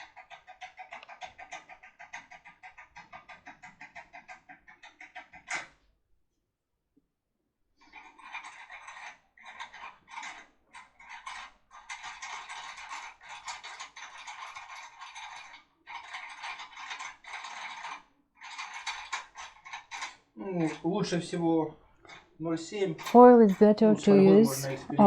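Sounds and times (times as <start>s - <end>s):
lockpick rattling and scraping in lock: 0.0s - 5.8s, 7.8s - 20.3s, 22.0s - 22.3s.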